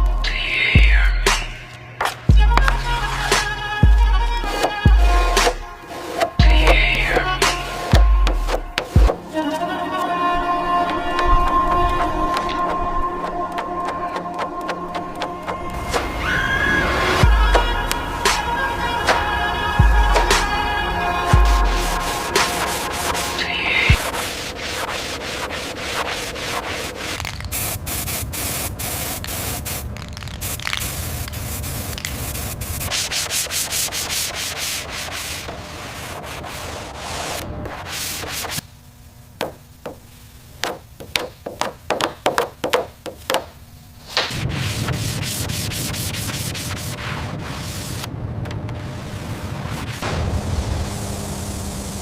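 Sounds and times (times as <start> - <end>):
sanding rasping scrape: 4.3 - 9.2, 21.4 - 27.5, 30.7 - 38.6, 44.6 - 48.1.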